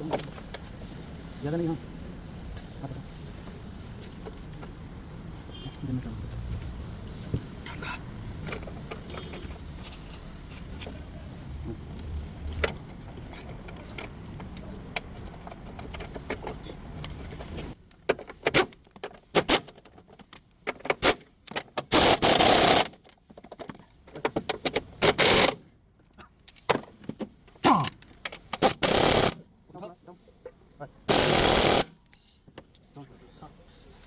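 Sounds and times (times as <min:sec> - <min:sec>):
loud hissing bursts: 0:28.6 - 0:29.4, 0:31.1 - 0:31.9.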